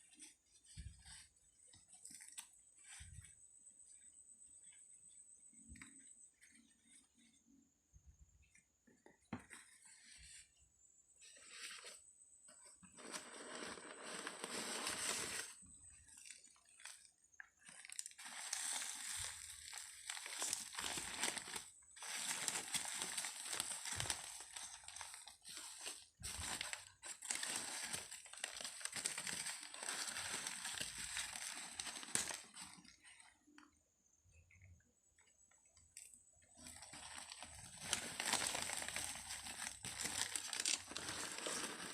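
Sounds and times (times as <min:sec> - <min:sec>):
packaging crinkling: 0:12.9 - 0:33.2, 0:36.6 - 0:41.9.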